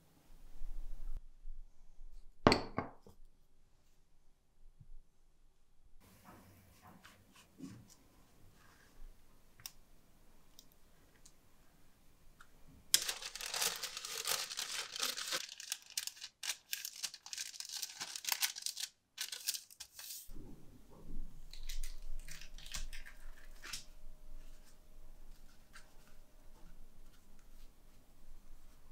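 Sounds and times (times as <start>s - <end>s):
packaging tearing and crinkling: 13.0s - 20.3s, 21.5s - 23.9s.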